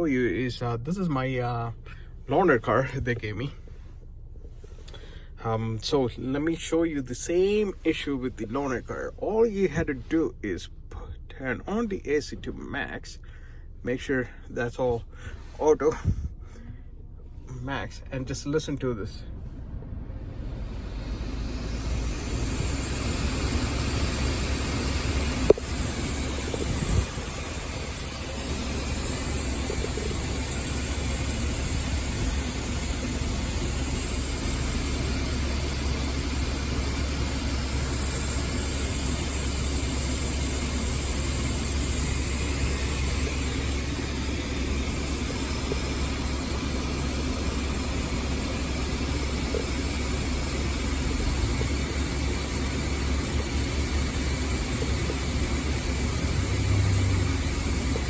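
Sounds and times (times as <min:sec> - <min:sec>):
car air blower rushing: 0:19.4 - 0:58.0.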